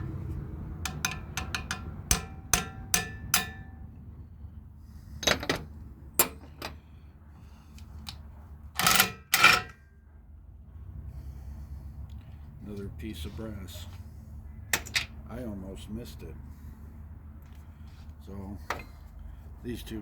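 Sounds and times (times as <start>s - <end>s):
metal clatters: 0.8s - 3.8s
metal tool clinking on brass valve: 0.9s - 3.9s.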